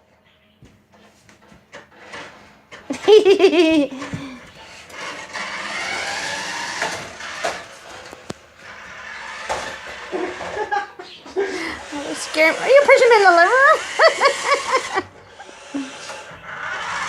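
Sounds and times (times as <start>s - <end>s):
remote-control car whirring: 0.9s - 17.0s
person laughing squeal: 13.6s - 16.3s.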